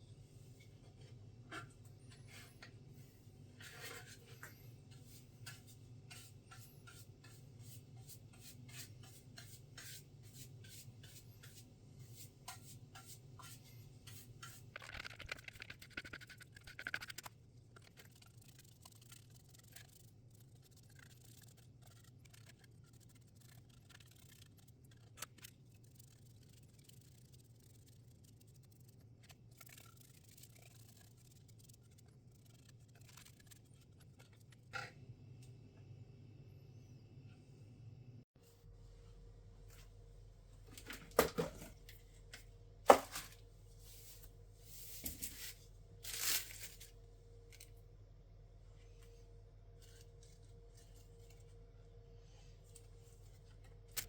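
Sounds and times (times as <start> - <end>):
scratching and small clicks: 14.1 - 35.0.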